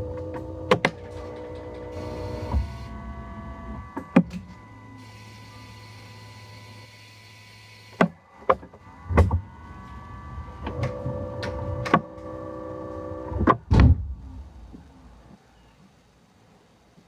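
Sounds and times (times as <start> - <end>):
steady buzzing tone: 0.0 - 15.3
sharp clicks and knocks: 0.1 - 1.9.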